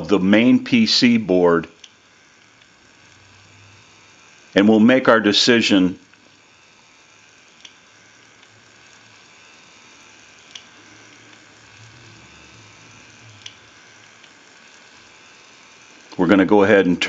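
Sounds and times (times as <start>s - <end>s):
motorised gears running faintly: 2.1s - 17.0s
low hum: 2.4s - 4.9s.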